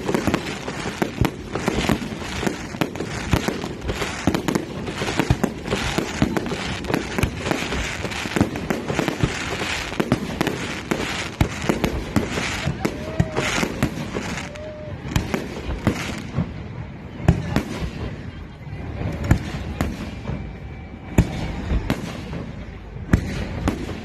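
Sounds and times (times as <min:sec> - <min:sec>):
crackling hiss: 0:00.0 - 0:18.0
fireworks banging: 0:00.0 - 0:24.0.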